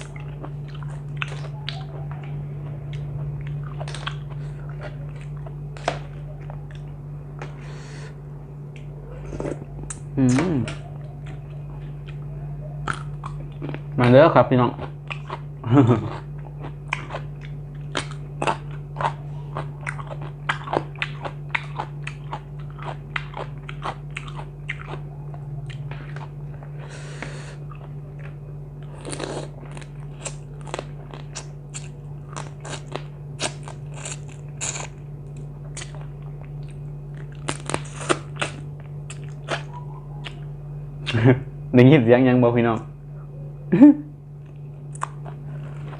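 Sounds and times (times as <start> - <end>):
person chewing crunchy food: 0.0 - 41.2, 44.4 - 45.9
low hum: 0.0 - 45.9.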